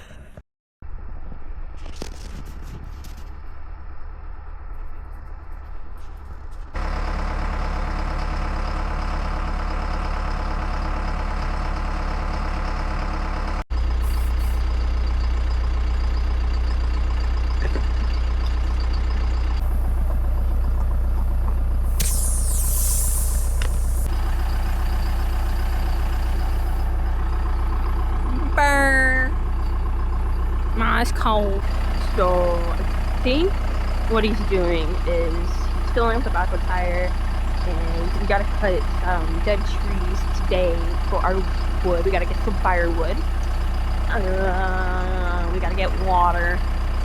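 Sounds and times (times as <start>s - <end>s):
backhoe engine idling: 4.2s - 47.0s
air hissing: 14.0s - 14.6s, 21.8s - 26.9s.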